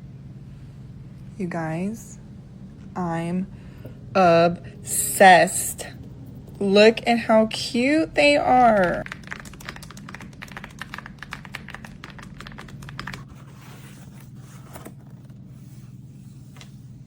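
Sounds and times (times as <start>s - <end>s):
low hum: 0.0s - 17.0s
mechanical keyboard clicking: 8.7s - 13.2s.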